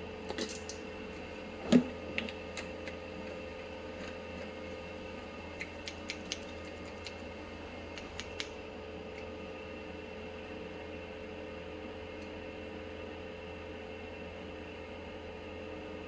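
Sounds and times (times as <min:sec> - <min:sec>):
fan hum: 0:00.0 - 0:14.5
scissors snipping: 0:02.6 - 0:08.6.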